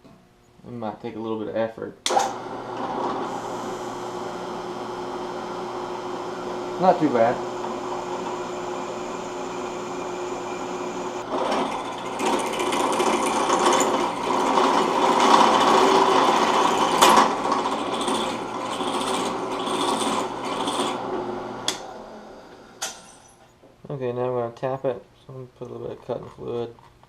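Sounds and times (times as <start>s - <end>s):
electric drill grinding metal: 2.1s - 23.3s.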